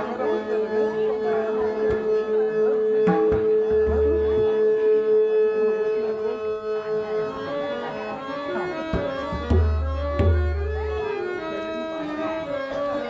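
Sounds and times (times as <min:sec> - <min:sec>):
hand drum strokes: 0:03.0 - 0:04.5, 0:08.9 - 0:11.0.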